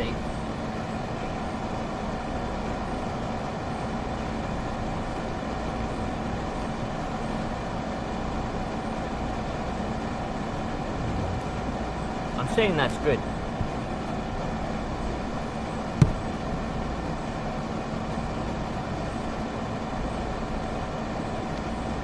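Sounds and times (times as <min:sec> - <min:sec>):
steady mechanical hum: 0:00.0 - 0:22.0
even whooshing noise: 0:11.0 - 0:12.4.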